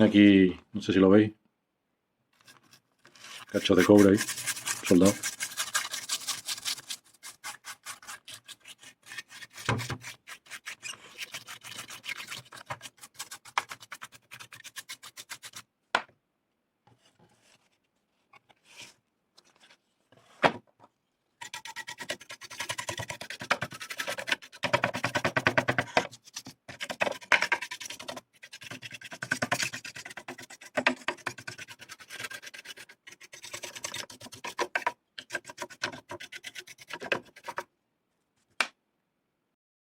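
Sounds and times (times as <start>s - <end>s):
scratchy rubbing on circuit board: 2.4s - 15.6s, 21.4s - 37.7s.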